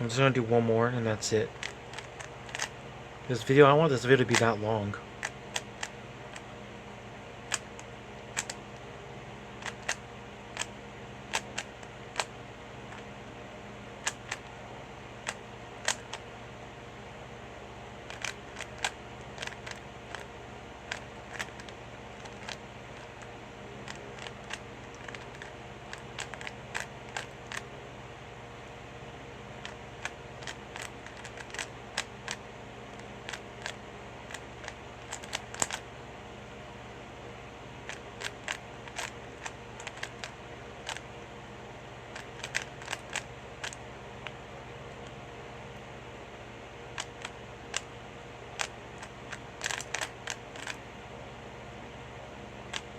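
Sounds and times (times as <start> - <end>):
steady low hum: 0.0 - 52.9
puzzle cube clicking: 1.5 - 2.7, 5.2 - 6.4, 7.4 - 8.8, 9.6 - 13.1, 14.0 - 14.5, 15.2 - 16.2, 18.0 - 27.7, 29.6 - 35.9, 37.8 - 41.0, 42.1 - 44.4, 46.9 - 47.9, 48.5 - 50.8, 52.7 - 52.9.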